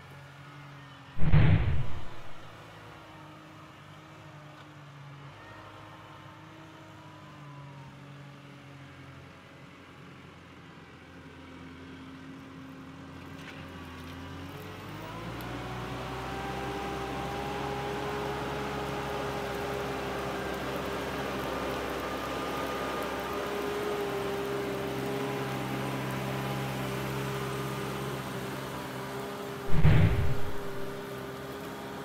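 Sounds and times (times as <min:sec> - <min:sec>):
tractor engine running: 0:29.7 - 0:31.0.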